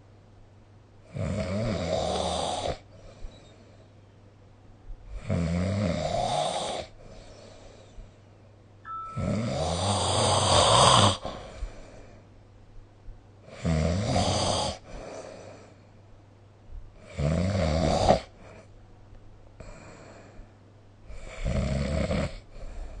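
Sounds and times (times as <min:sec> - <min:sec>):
quiet breathing: 0:02.1 - 0:04.2, 0:06.1 - 0:09.1, 0:09.8 - 0:12.5, 0:14.4 - 0:17.1, 0:18.0 - 0:18.8, 0:19.5 - 0:21.5, 0:22.2 - 0:23.0
person snoring: 0:09.2 - 0:11.5.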